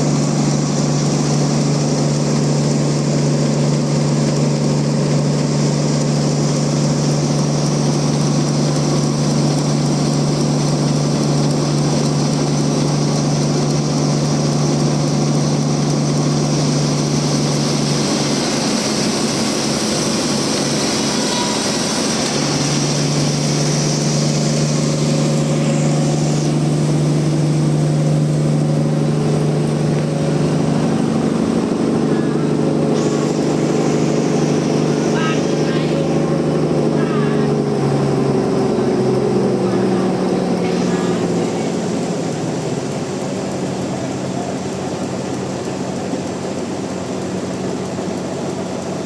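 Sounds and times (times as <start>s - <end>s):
sawmill motor hum: 0.0s - 49.0s
saw blade hissing in wood: 32.9s - 36.4s.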